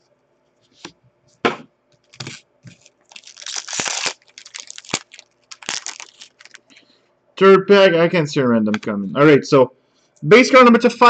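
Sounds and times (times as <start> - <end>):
cards shuffling: 2.0 - 6.8
wrapper tearing and crinkling: 2.0 - 6.8.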